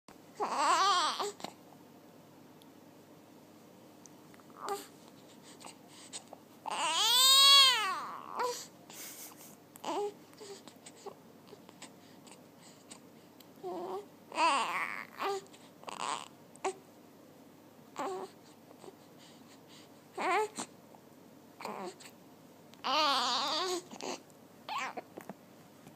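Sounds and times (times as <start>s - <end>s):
baby cooing: 0.4s - 1.6s, 4.5s - 4.9s, 6.7s - 8.7s, 9.8s - 11.7s, 13.6s - 16.8s, 18.0s - 18.9s, 20.2s - 20.7s, 21.6s - 22.1s, 22.8s - 25.2s.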